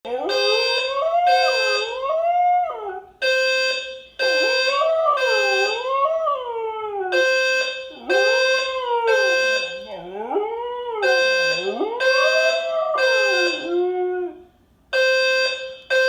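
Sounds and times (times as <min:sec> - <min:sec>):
fire alarm beeping: 0:00.1 - 0:02.2, 0:03.2 - 0:06.1, 0:07.1 - 0:10.0, 0:11.0 - 0:13.9, 0:14.9 - 0:16.0.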